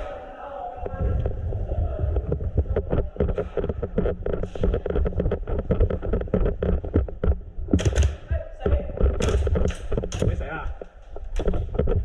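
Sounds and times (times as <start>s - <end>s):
wind buffeting microphone: 0.8s - 10.4s
clatter of sharp clicks and knocks: 2.8s - 12.0s.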